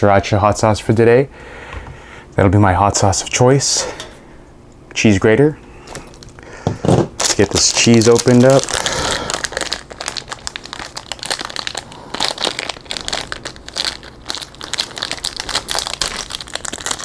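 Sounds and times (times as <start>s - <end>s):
plastic wrapping crinkling: 5.8s - 17.0s.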